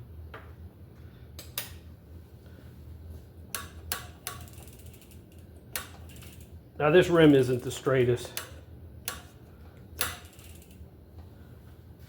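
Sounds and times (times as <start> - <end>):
hand tool clicking on metal: 3.5 - 6.4, 8.2 - 9.4, 10.0 - 10.8.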